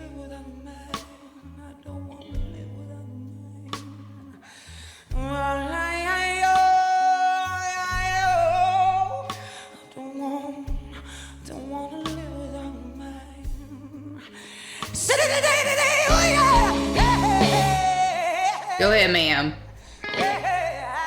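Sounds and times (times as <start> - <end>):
live band playing slow blues: 0.0 - 1.6, 2.2 - 21.0
woman singing: 0.0 - 4.4, 5.1 - 21.0.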